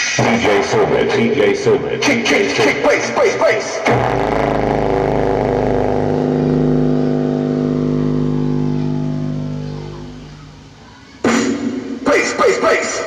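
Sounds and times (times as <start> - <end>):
subwoofer playing held tone: 3.8 - 12.0.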